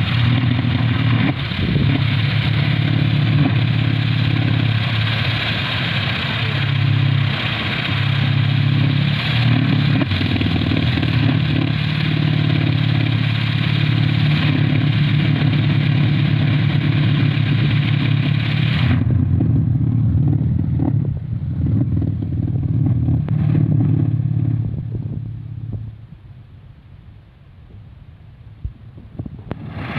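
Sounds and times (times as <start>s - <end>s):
rushing hiss: 0.0s - 19.2s
wind-spun propeller droning: 0.0s - 29.9s.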